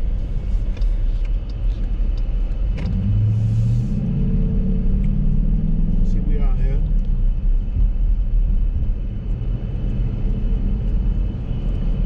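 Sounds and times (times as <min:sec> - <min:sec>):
car engine rumble: 0:00.0 - 0:12.0
road noise: 0:00.0 - 0:12.0.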